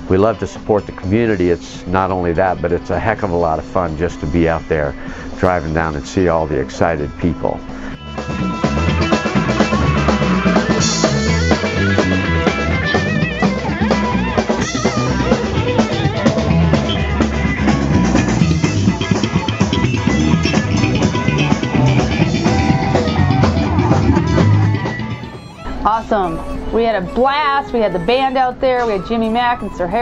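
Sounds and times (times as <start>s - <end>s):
rock music on drums and guitar: 7.6s - 25.4s.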